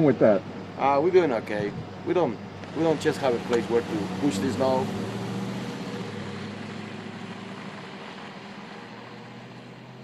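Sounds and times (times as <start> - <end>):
vehicle engine humming: 0.0 - 10.0.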